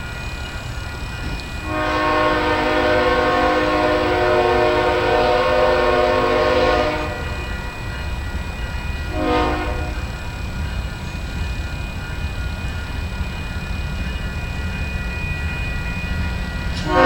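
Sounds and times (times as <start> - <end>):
locomotive air horn blast: 1.7 - 7.4, 9.1 - 10.0, 16.8 - 17.0.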